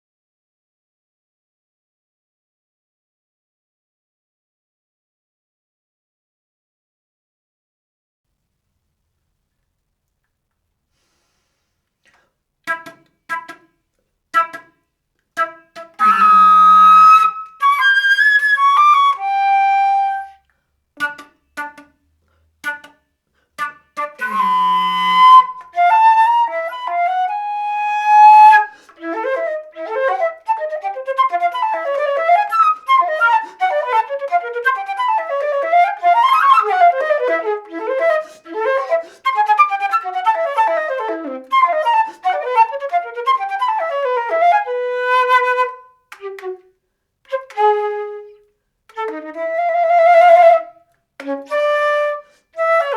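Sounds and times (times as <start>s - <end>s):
solo flute playing: 12.7s - 13.7s, 14.4s - 14.8s, 15.4s - 20.4s, 21.0s - 22.0s, 22.6s - 23.0s, 23.6s - 52.9s.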